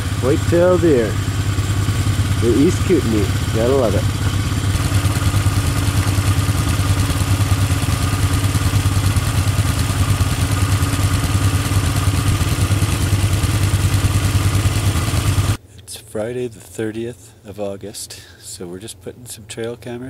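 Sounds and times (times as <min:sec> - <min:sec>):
vehicle engine running: 0:00.0 - 0:15.6.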